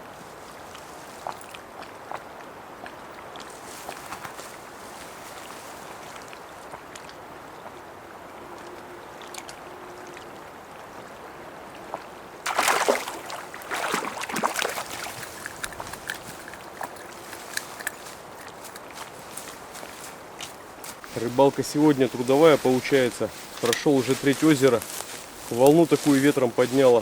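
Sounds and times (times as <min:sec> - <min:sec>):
small waves on a lake: 0:00.0 - 0:27.0
water splashing and sloshing: 0:00.3 - 0:26.8
small clicks: 0:14.8 - 0:19.1.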